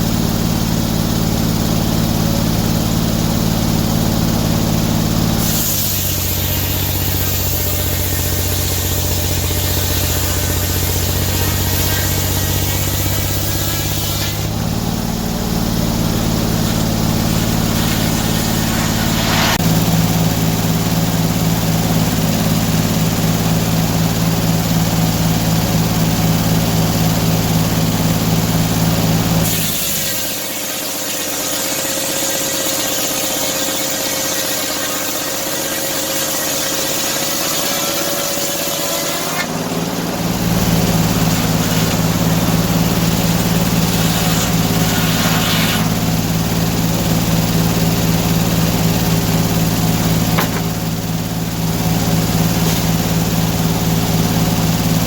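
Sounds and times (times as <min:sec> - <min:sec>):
sawmill engine running: 0:00.0 - 0:55.0
thin steady whine: 0:07.2 - 0:21.2.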